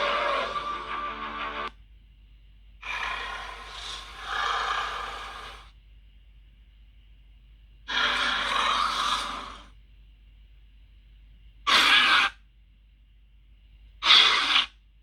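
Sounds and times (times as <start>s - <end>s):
creature pitched call: 0.0s - 1.2s, 7.9s - 9.7s, 11.7s - 12.4s, 14.0s - 14.8s
harsh breathy creature exhale: 2.8s - 5.7s.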